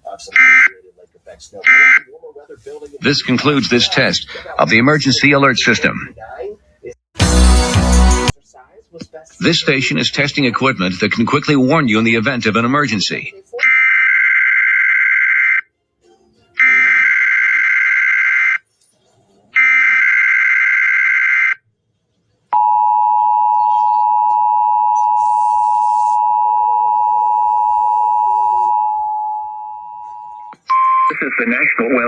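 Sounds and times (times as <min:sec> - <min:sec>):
two-tone warning alarm: 0:16.6 - 0:18.6, 0:22.6 - 0:31.1.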